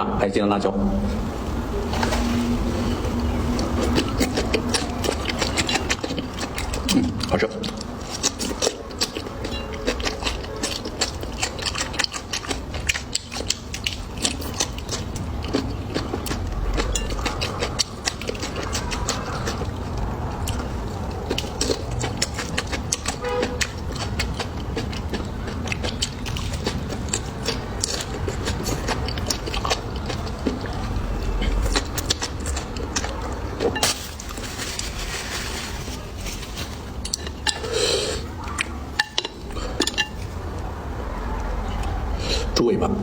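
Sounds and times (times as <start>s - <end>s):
low hum: 0.0s - 6.0s
close chewing and gnawing: 1.8s - 42.6s.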